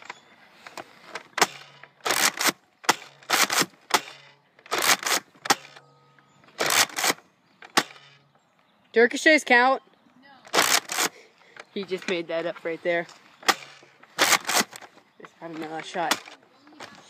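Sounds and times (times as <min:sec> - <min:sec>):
toy blasters primed and fired: 0:01.4 - 0:05.8, 0:06.6 - 0:08.0, 0:10.5 - 0:11.1, 0:13.4 - 0:14.8.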